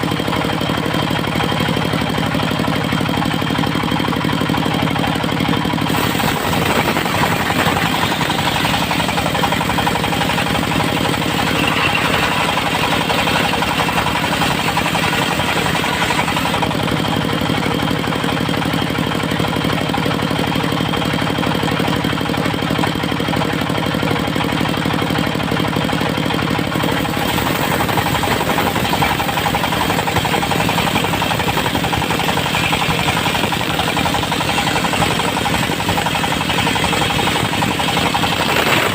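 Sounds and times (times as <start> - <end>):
engine pulsing: 0.0 - 38.9
circular saw cutting wood: 5.8 - 17.3, 26.7 - 38.9.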